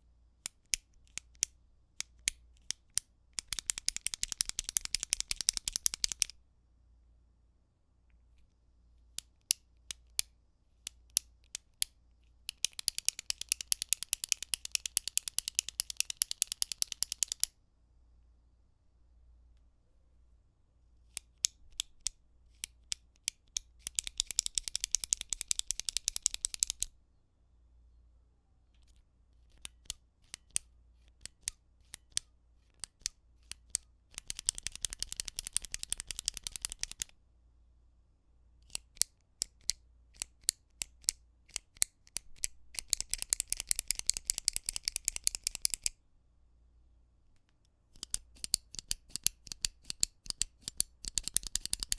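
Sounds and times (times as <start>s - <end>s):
retractable pen clicking: 0.5s - 6.4s, 9.2s - 17.5s, 21.1s - 26.9s, 28.8s - 37.1s, 38.6s - 46.0s, 47.9s - 51.9s.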